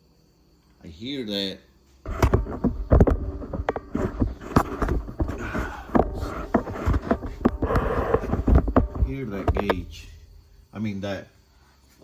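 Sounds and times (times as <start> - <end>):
hydraulic hissing: 2.1 - 10.8.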